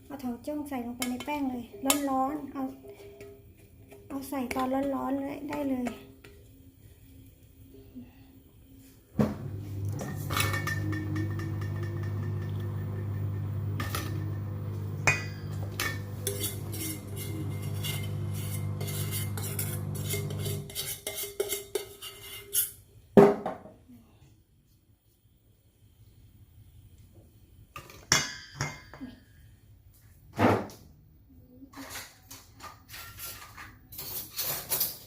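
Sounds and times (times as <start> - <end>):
dish clanking: 9.2 - 20.8
small motor humming: 9.4 - 20.6
utensils clinking against bowl: 9.9 - 22.7, 31.8 - 35.0.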